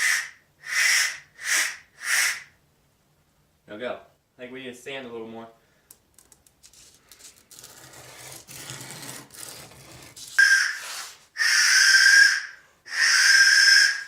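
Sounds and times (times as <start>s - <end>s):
wooden whistle blasts: 0.0s - 2.6s, 10.4s - 14.0s
sandpaper rasping on wood: 7.8s - 11.2s.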